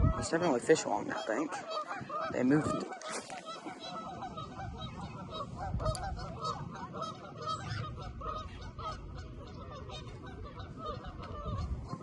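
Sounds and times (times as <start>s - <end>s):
geese honking: 0.0s - 12.0s
low wind rumble: 0.0s - 12.0s.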